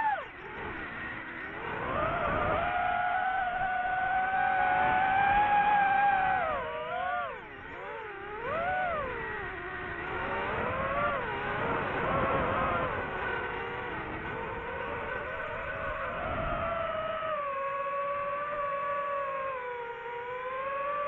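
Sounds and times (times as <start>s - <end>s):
drone propellers whining: 0.0s - 21.0s.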